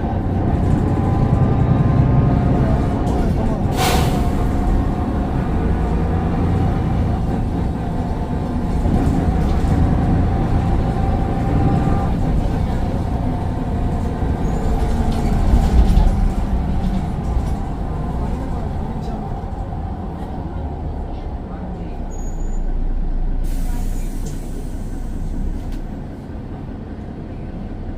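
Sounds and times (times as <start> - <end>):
bus diesel engine rumble: 0.0 - 27.9.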